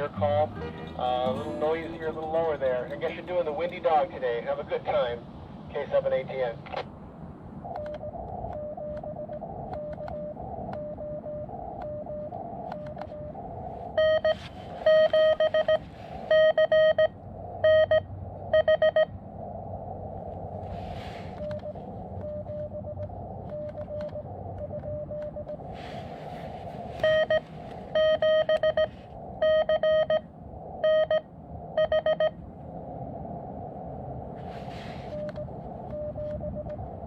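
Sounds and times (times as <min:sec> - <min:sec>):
morse code tones: 0:00.5 - 0:04.9, 0:14.0 - 0:18.0, 0:27.0 - 0:27.4, 0:28.0 - 0:32.4, 0:35.1 - 0:36.8.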